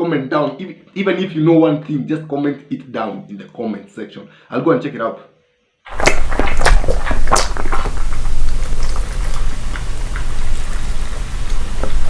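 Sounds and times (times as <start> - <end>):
wet chewing and smacking: 5.9 - 12.0.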